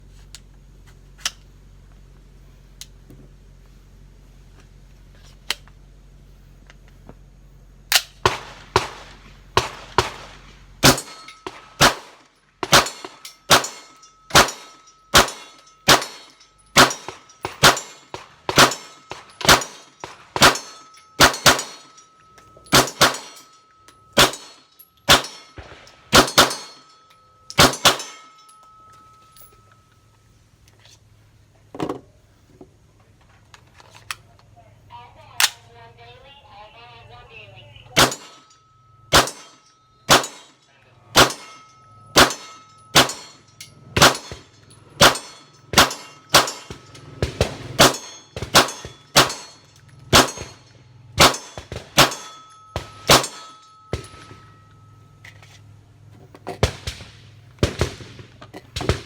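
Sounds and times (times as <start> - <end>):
gunshots: 7.9 - 21.9, 22.7 - 23.4, 24.2 - 26.8, 27.6 - 28.2, 38.0 - 38.5, 39.1 - 40.6, 41.2 - 41.6, 42.2 - 43.4, 44.0 - 50.6, 51.2 - 54.4, 56.6 - 59.0
steel target ringing: 10.8 - 30.1, 38.0 - 55.3.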